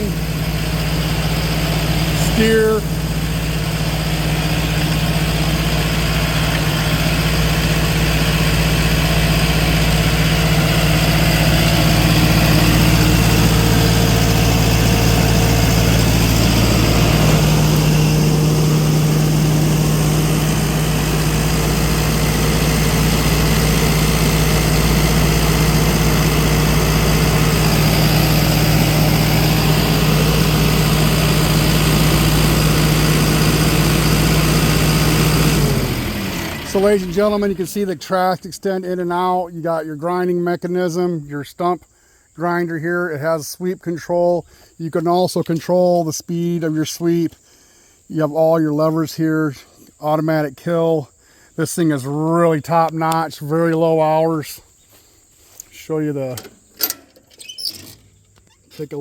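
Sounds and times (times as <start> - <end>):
diesel engine running: 0.0 - 39.6.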